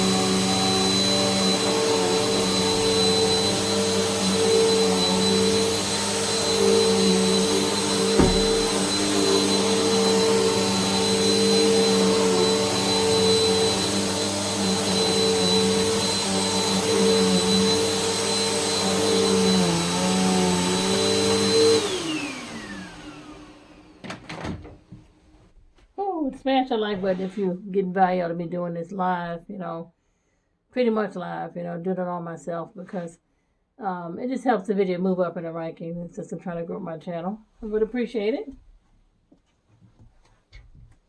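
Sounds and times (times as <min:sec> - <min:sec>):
vacuum cleaner motor whining: 0:00.0 - 0:25.0.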